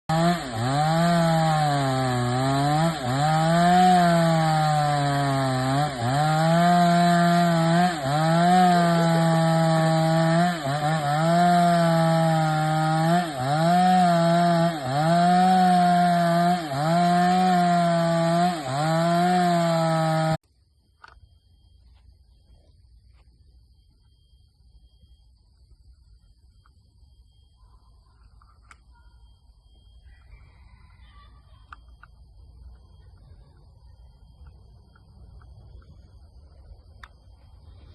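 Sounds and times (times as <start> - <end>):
chainsaw cutting through wood: 0.0 - 20.4.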